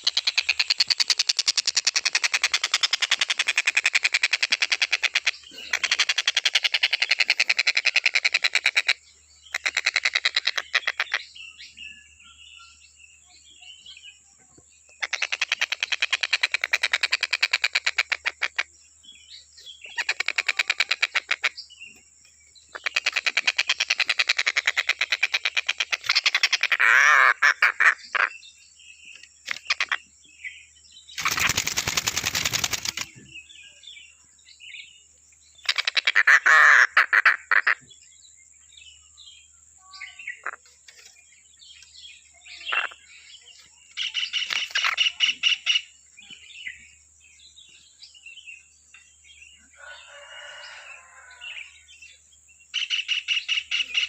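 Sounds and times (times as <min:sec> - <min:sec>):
bird chirps: 0:00.0 - 0:54.0
kingfisher rattling trills: 0:31.2 - 0:33.2.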